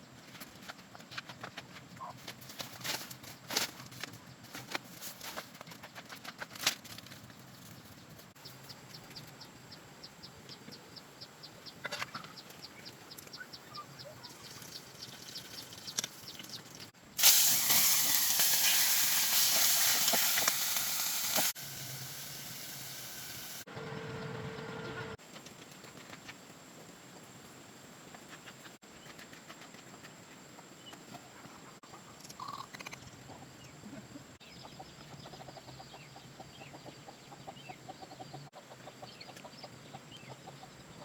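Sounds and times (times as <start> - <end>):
loud hiss: 17.2 - 23.7.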